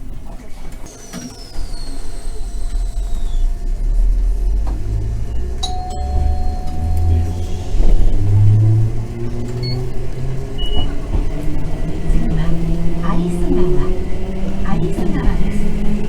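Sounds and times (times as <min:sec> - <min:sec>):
streetcar electric whine: 0:00.0 - 0:16.0
streetcar low rumble: 0:00.0 - 0:16.0
bell-like tone: 0:05.6 - 0:08.8.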